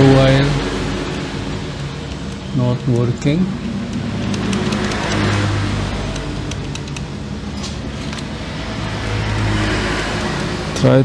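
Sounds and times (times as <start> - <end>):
vehicle engine running: 0.0 - 11.0
light clicks: 1.0 - 8.3.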